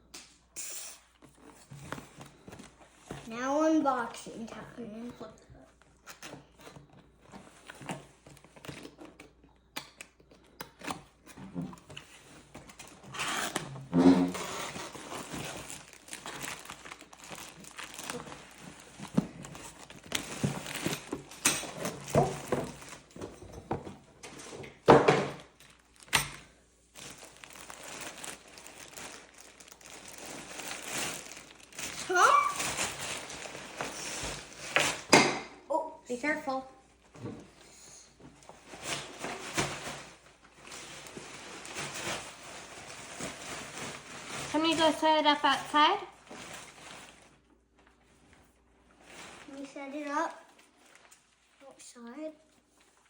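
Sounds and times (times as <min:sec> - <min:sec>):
wrapping crinkling and tearing: 0:10.0 - 0:23.3, 0:25.4 - 0:35.1, 0:38.6 - 0:53.0.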